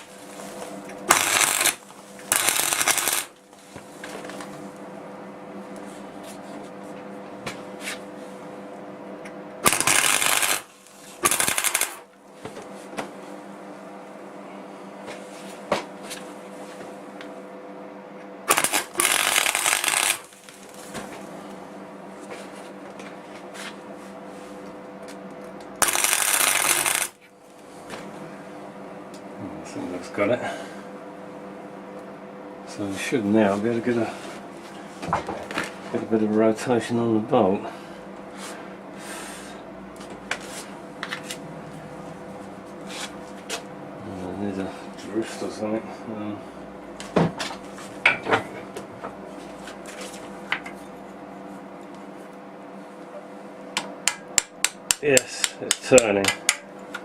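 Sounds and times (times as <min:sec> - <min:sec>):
steady hum: 0:00.0 - 0:57.0
arc welding bursts: 0:01.1 - 0:03.4, 0:09.6 - 0:12.1, 0:18.5 - 0:20.6, 0:25.8 - 0:27.2.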